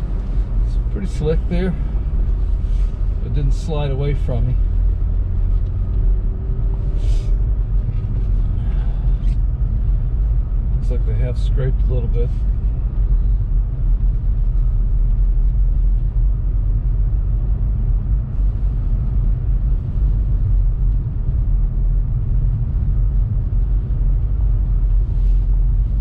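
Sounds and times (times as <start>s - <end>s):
tyre and road noise inside car: 0.0s - 26.0s.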